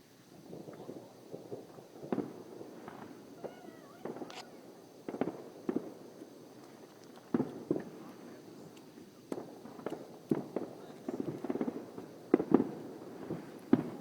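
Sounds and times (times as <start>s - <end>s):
fireworks popping and banging: 0.0s - 14.0s.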